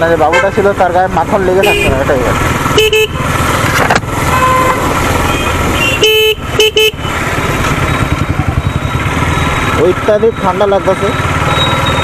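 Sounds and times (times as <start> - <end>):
motorcycle engine: 0.0 - 12.0
road rumble: 0.0 - 12.0
vehicle horn toots: 1.6 - 2.0, 2.8 - 3.2, 4.3 - 7.1.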